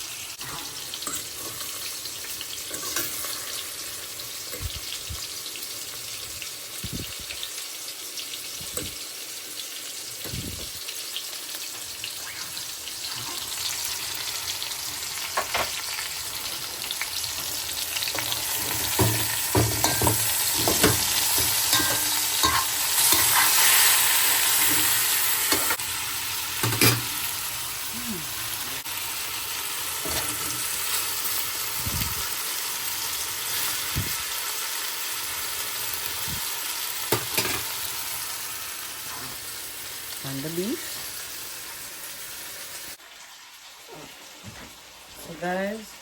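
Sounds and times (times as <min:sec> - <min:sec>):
meat sizzling in hot oil: 0:00.0 - 0:46.0
spoon knocking and scraping pot: 0:18.1 - 0:23.6.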